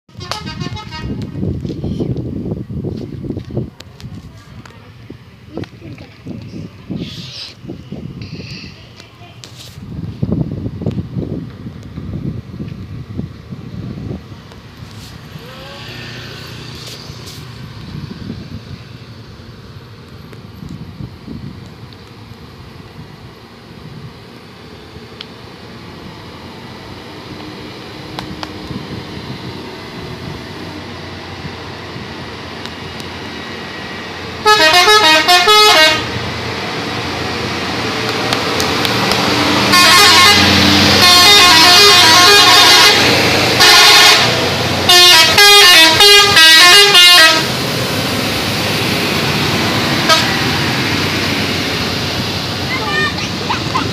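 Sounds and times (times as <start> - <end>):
musical air horn blasts: 0.1 - 1.2, 34.4 - 36.2, 39.5 - 47.6, 50.0 - 50.4
vehicle noise: 0.1 - 53.9.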